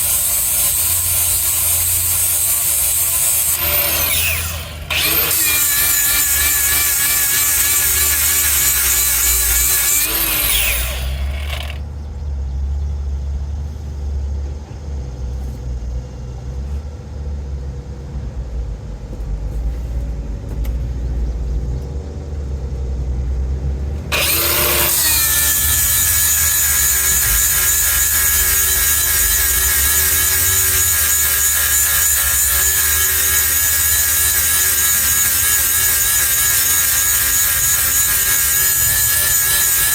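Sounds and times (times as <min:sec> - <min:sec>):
power grinder grinding steel: 0:00.0 - 0:11.8, 0:24.1 - 0:39.9.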